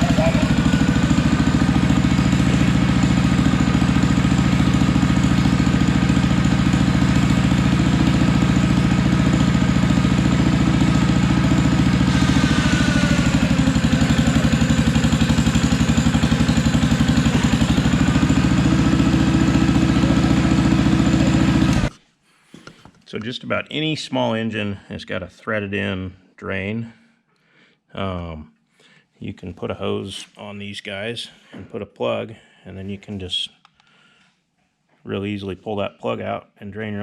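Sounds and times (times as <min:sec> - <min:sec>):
single-cylinder engine running: 0:00.0 - 0:21.9.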